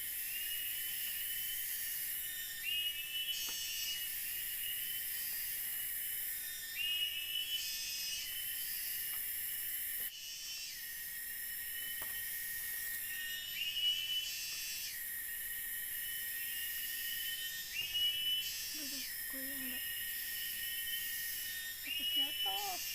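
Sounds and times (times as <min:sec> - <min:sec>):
insects chirring: 0:00.0 - 0:22.9
repeating chirping call: 0:21.9 - 0:22.9.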